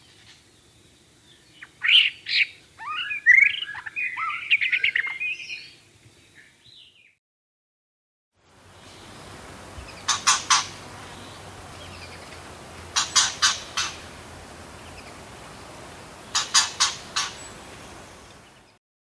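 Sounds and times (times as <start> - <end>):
steady background hiss: 0.0 - 7.0, 8.4 - 18.8
bird harsh calls: 1.3 - 5.8, 9.8 - 18.7.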